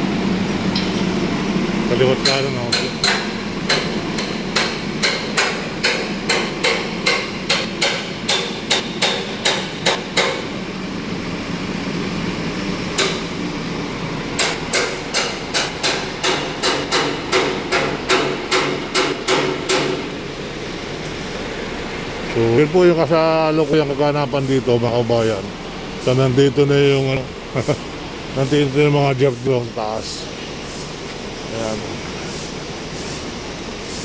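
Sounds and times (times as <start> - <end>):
road works background noise: 0.0 - 34.0
sharp hammer blows: 2.2 - 10.4, 14.4 - 20.1.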